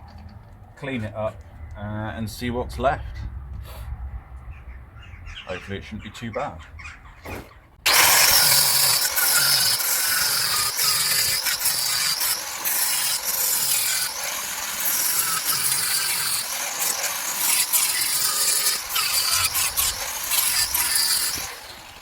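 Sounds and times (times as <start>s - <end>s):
angle grinder grinding metal: 7.9s - 22.0s.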